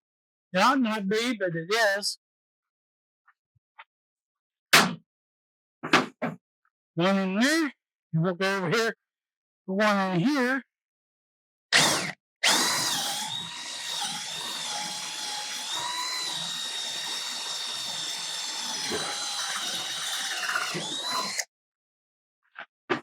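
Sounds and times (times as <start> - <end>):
cordless drill drilling into wood: 11.7 - 21.5.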